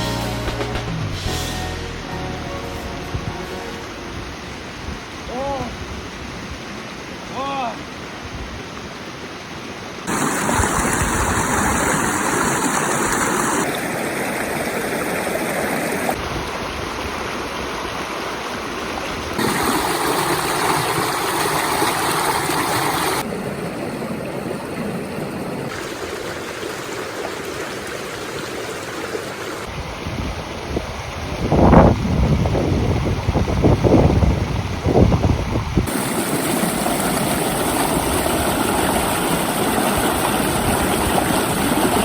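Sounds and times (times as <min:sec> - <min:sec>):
stream rushing over rocks: 0:03.2 - 0:30.0, 0:35.9 - 0:42.0.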